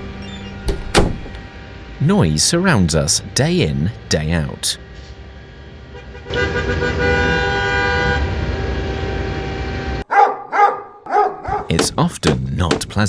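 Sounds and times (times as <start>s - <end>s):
road traffic: 3.9s - 10.0s, 11.5s - 13.0s
car horn blast: 5.9s - 9.3s.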